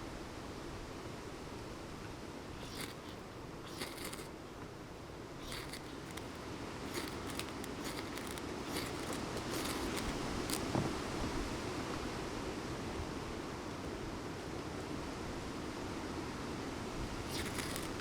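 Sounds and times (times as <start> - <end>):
knife blade scraping: 2.6 - 4.3, 5.4 - 10.7, 17.3 - 18.0.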